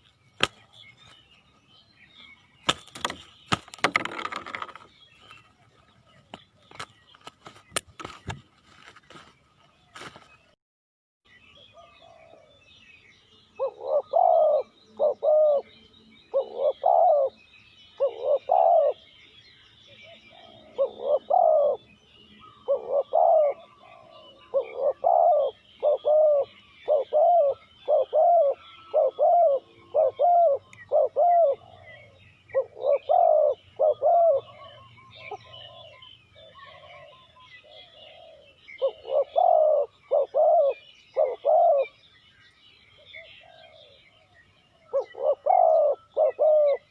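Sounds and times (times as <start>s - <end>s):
faint twittering of small birds: 0.0s - 10.6s, 11.2s - 46.9s
dove cooing: 13.6s - 15.7s, 16.3s - 19.1s, 20.0s - 42.0s, 43.0s - 46.9s.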